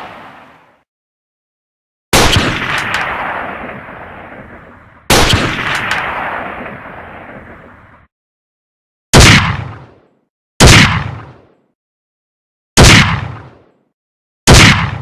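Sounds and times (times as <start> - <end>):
gunshots with echoing tail: 2.1 - 8.1, 9.1 - 11.7, 12.8 - 13.9, 14.5 - 15.0.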